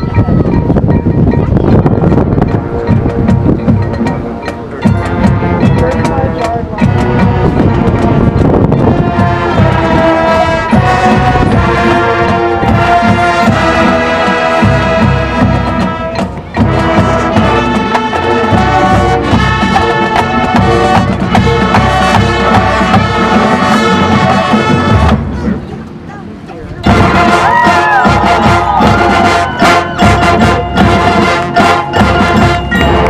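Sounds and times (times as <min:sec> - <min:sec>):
drums and percussion: 0:00.0 - 0:33.0
marching band playing: 0:00.0 - 0:33.0
brass chords: 0:01.9 - 0:25.8, 0:26.8 - 0:33.0.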